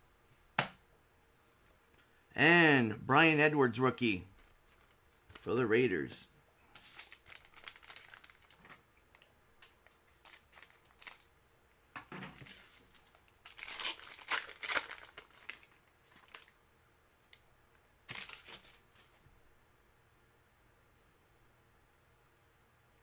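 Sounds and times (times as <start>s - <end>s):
wrappers crinkling and tearing: 4.4s - 5.6s, 6.8s - 11.4s, 12.3s - 16.6s, 18.0s - 19.1s.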